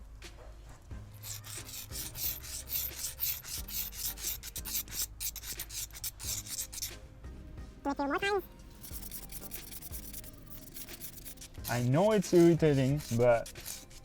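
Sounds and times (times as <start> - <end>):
nail scraping on concrete: 1.2 - 7.0, 8.7 - 14.0.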